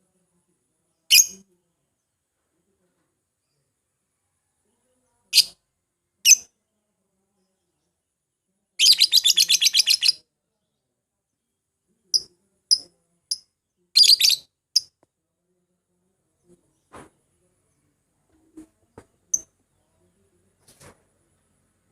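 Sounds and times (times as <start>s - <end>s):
lovebird chirping shrilly: 14.0s - 14.9s.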